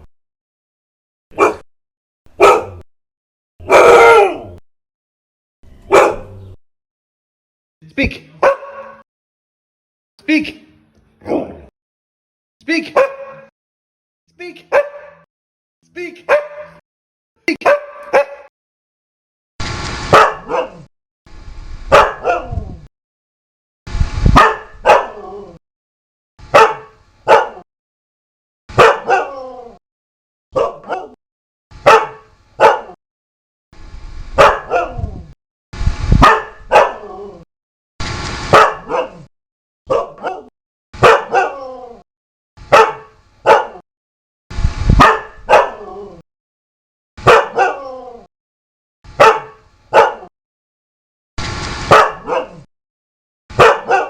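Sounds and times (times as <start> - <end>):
dog barking: 1.3 - 1.6, 2.4 - 2.8, 3.6 - 4.6, 5.9 - 6.4, 8.4 - 9.0, 13.0 - 13.5, 14.7 - 15.3, 16.3 - 16.8, 17.6 - 18.5, 20.1 - 20.9, 21.9 - 22.6, 24.4 - 25.2, 26.5 - 27.6, 28.7 - 29.4, 30.6 - 31.2, 31.8 - 33.0, 34.4 - 35.0, 36.2 - 37.1, 38.5 - 39.3, 39.9 - 41.6, 42.7 - 43.8, 45.0 - 45.9, 47.2 - 47.9, 49.2 - 50.3, 51.9 - 52.7, 53.5 - 54.0.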